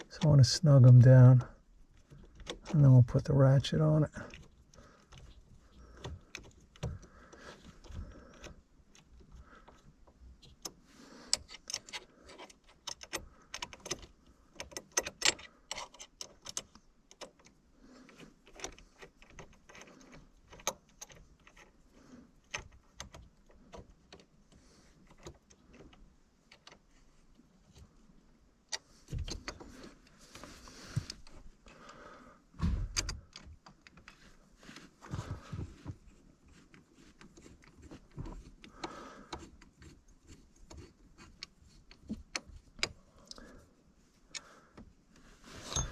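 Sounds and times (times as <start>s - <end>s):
dull thumps: 32.6s - 33.2s
screws and tools clinking: 45.6s - 45.9s.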